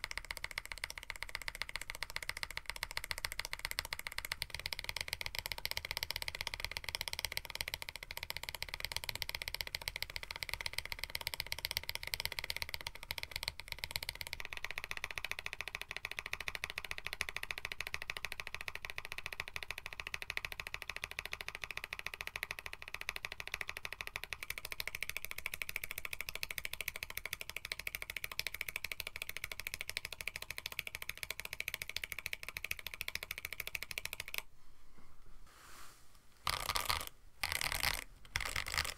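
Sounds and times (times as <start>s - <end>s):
mechanical keyboard typing: 0.0s - 34.5s, 36.4s - 38.9s.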